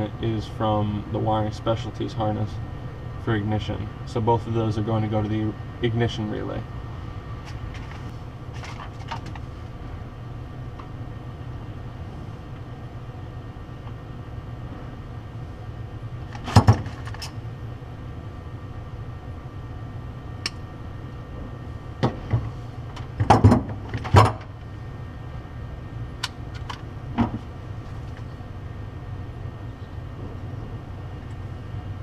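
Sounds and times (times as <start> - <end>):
steady low hum: 0.0 - 32.0.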